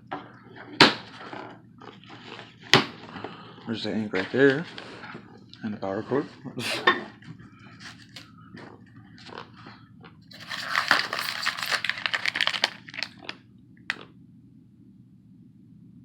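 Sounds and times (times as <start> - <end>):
packaging crinkling and rustling: 7.8 - 8.3, 10.3 - 14.0.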